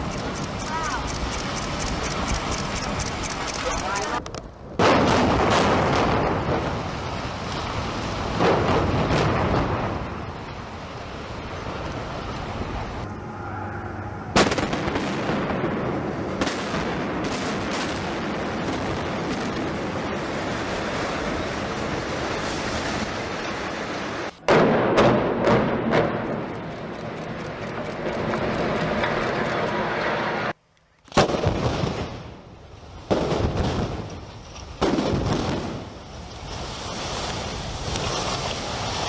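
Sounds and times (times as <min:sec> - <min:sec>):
rumble of collapsing building: 0:04.2 - 0:13.2.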